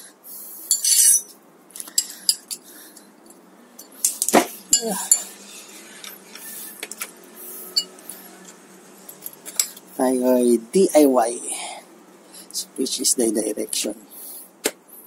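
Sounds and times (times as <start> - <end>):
metal hand tools clinking: 0.7 - 7.0, 7.7 - 9.9.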